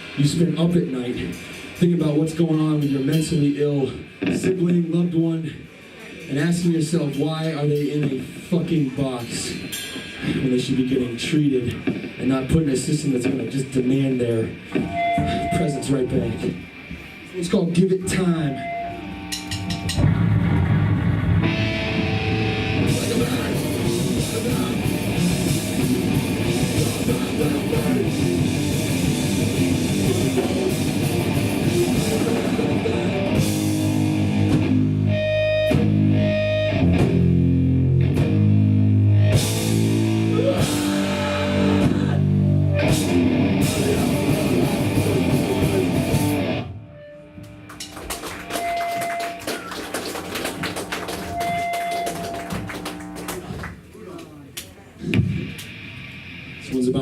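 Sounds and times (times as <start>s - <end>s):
lingering guitar tones: 0.0s - 50.0s
punk band playing live: 7.7s - 13.8s, 18.6s - 46.8s.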